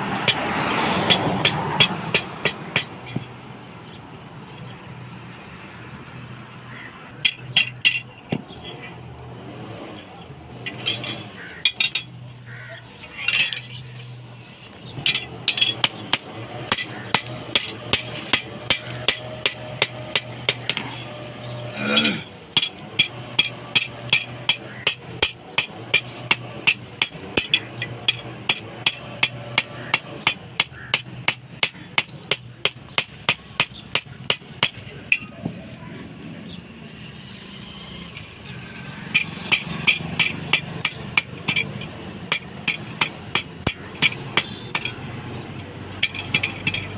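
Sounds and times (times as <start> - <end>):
hammer striking steel on anvil: 15.0 - 21.0, 39.1 - 45.0.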